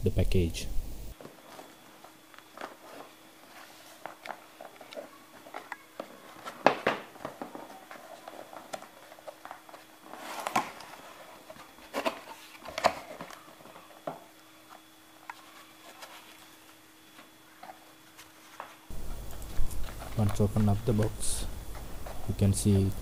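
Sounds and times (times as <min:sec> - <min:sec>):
cardboard box rustling: 0:01.2 - 0:14.1.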